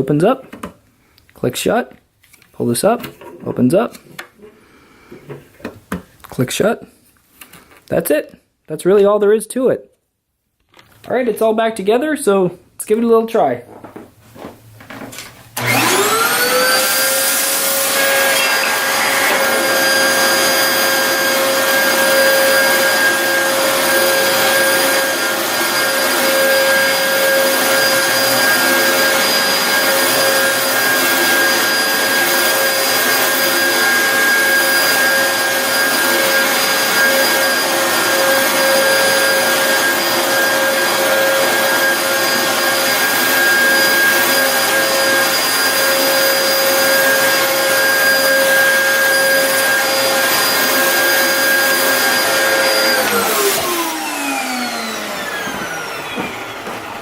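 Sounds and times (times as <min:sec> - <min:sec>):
vacuum cleaner motor whining: 0:15.1 - 0:57.0.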